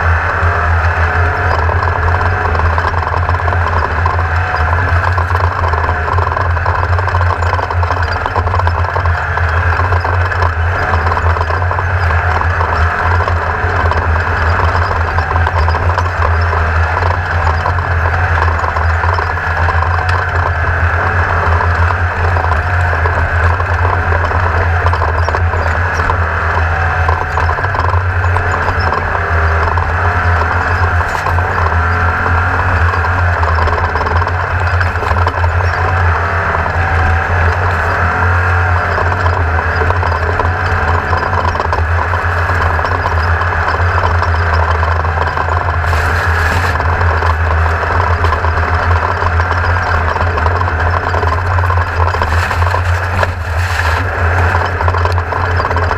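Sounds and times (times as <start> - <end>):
buggy engine running: 0.0 - 55.9
rapid rattle and clatter: 0.0 - 55.9.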